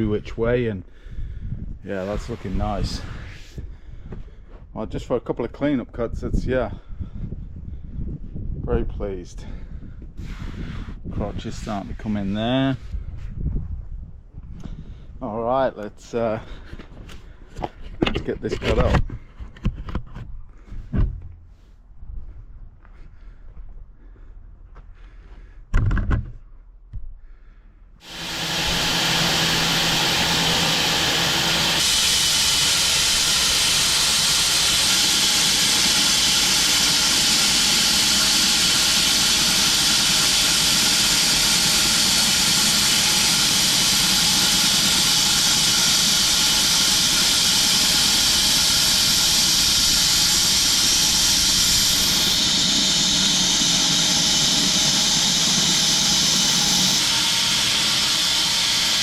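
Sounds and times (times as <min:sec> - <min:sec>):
bandsaw sawing through log: 0:28.0 - 0:59.0.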